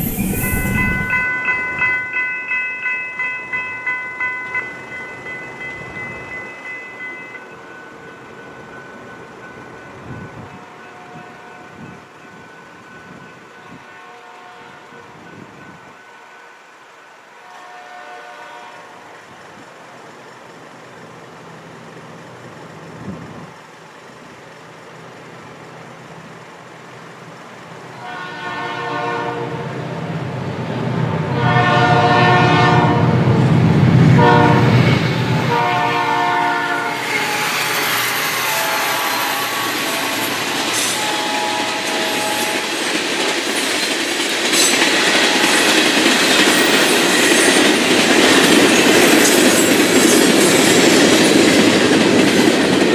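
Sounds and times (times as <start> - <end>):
locomotive engine rumble: 0.0 - 1.9, 19.0 - 28.8
train wheels clicking on rails: 0.0 - 10.6, 33.4 - 52.9
locomotive chime horn blasts: 10.0 - 19.1, 28.0 - 29.8, 31.3 - 33.2, 34.2 - 42.8, 45.1 - 45.8.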